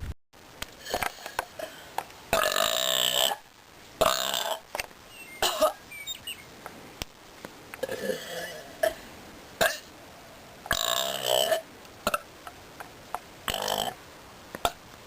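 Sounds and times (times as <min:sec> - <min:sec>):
person belching: 0:02.3 - 0:03.4, 0:04.0 - 0:04.6, 0:07.8 - 0:09.0, 0:10.7 - 0:12.2, 0:13.5 - 0:14.0.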